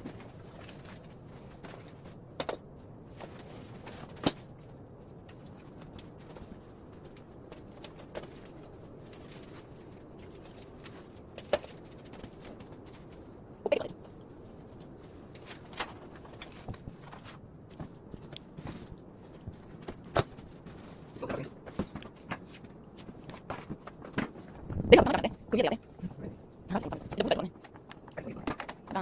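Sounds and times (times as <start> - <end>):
low background hum: 0.0 - 29.0.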